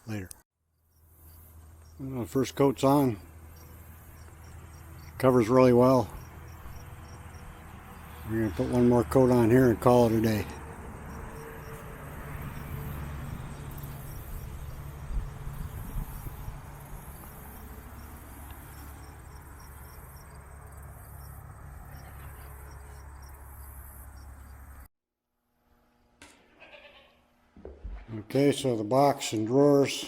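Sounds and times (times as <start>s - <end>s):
crickets chirping: 0.7s - 2.2s, 3.2s - 8.5s, 10.2s - 24.9s.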